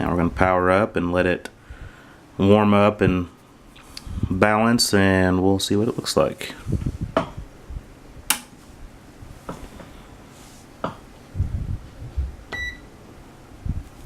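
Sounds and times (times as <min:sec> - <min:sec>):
switch clicks: 0:08.3 - 0:08.6
multimeter beep: 0:12.5 - 0:12.9.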